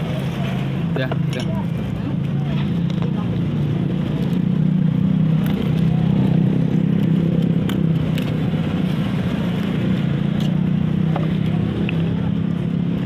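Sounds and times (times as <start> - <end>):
engine humming: 0.0 - 13.0.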